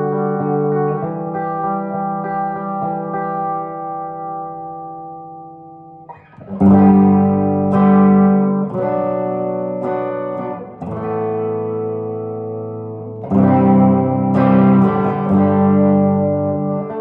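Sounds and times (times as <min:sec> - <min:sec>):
electric guitar chords ringing: 0:00.0 - 0:17.0.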